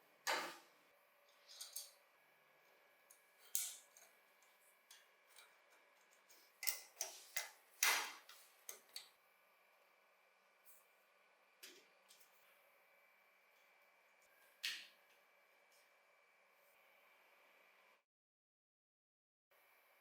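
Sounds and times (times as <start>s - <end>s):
clicks and taps of small parts: 3.1s - 4.1s, 4.9s - 9.1s.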